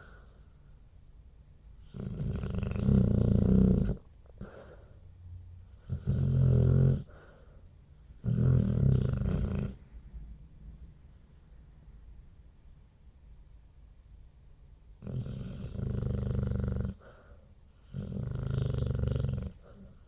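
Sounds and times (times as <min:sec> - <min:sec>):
loud snoring: 0:01.8 - 0:04.0, 0:05.8 - 0:07.1, 0:08.2 - 0:09.8, 0:15.0 - 0:17.0, 0:17.8 - 0:19.9.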